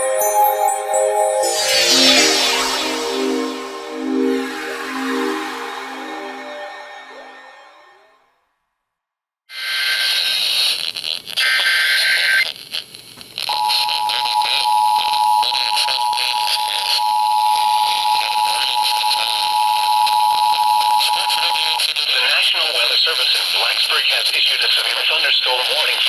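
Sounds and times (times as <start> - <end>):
steady dual tone: 0.0 - 8.4
data burst tones: 1.4 - 8.1
radio hiss: 21.4 - 26.0.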